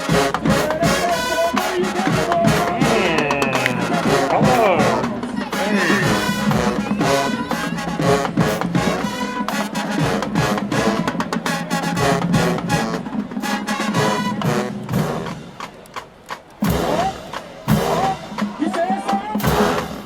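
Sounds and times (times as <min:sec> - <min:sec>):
sustained brass chords: 0:00.0 - 0:15.6
drumline beating: 0:00.0 - 0:20.0.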